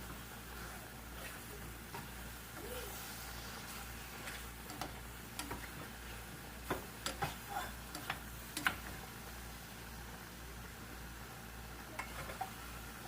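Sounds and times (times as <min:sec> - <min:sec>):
kitchen utensils clicking and tapping: 0:04.6 - 0:05.8, 0:06.6 - 0:08.9.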